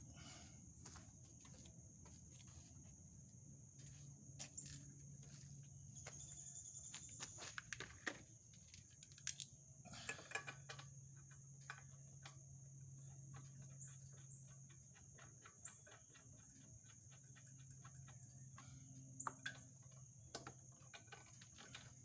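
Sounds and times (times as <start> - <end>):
metal tools clinking: 3.8 - 5.0, 8.8 - 10.6.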